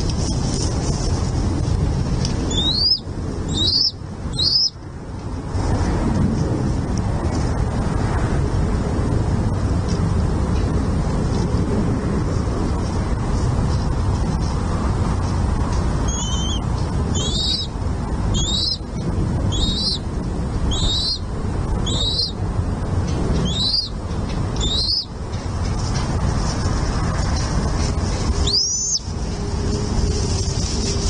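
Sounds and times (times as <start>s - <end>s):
low background rumble: 0.0s - 31.0s
eagle chattering chirps: 2.5s - 4.8s, 16.0s - 17.7s, 18.3s - 20.1s, 20.7s - 22.4s, 23.4s - 24.0s, 24.6s - 25.1s, 28.4s - 29.0s
eagle whistle: 2.5s - 4.8s, 16.1s - 17.7s, 18.4s - 18.8s, 19.5s - 20.0s, 20.7s - 21.2s, 21.8s - 22.4s, 23.4s - 23.9s, 24.6s - 25.1s, 28.4s - 29.0s.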